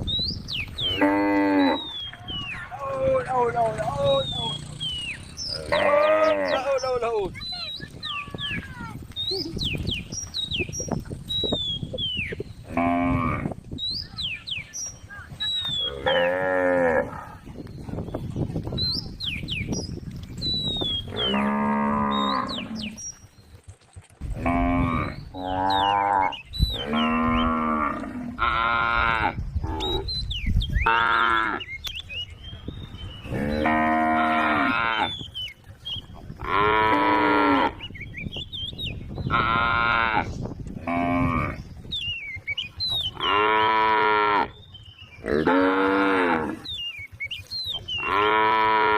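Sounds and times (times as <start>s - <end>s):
cows mooing: 0.8s - 2.0s, 3.2s - 7.2s, 12.6s - 13.5s, 15.8s - 17.4s, 21.0s - 23.0s, 24.3s - 30.1s, 30.9s - 31.7s, 33.2s - 35.2s, 36.4s - 37.8s, 39.3s - 41.6s, 43.1s - 44.6s, 45.2s - 46.7s, 48.0s - 48.9s.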